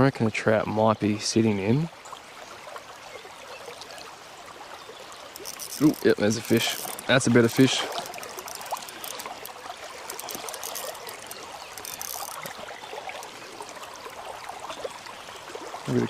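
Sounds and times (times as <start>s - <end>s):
river water trickling: 0.0s - 16.0s
faint clicks: 5.3s - 13.5s.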